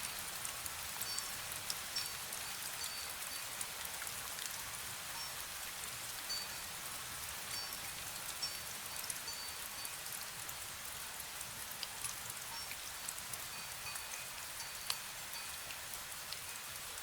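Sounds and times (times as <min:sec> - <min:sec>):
wind chime ringing: 0:09.3 - 0:09.6.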